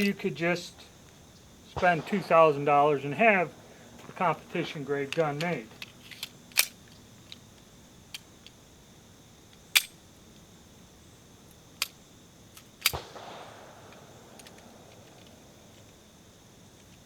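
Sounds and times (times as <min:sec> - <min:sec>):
pistol shots: 0:01.7 - 0:05.4, 0:12.8 - 0:16.0.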